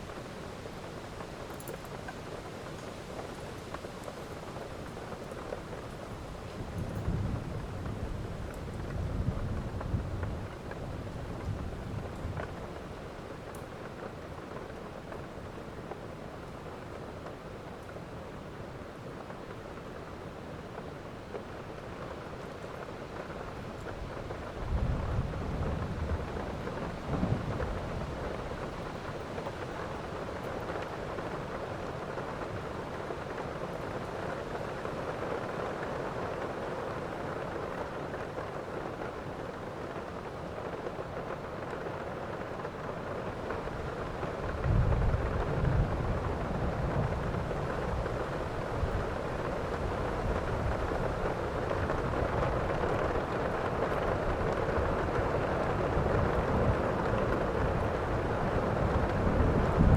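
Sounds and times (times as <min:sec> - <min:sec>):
heavy rain: 0:03.1 - 0:59.9
thunder rumbling: 0:44.4 - 0:59.9.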